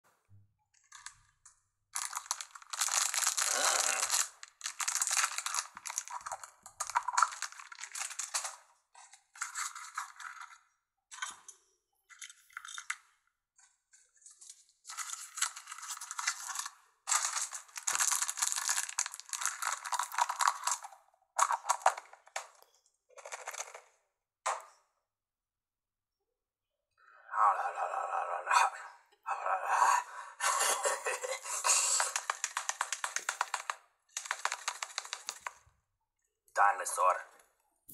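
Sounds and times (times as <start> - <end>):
foil wrapper crinkling: 2.0 - 8.7, 14.3 - 22.4, 31.0 - 35.6.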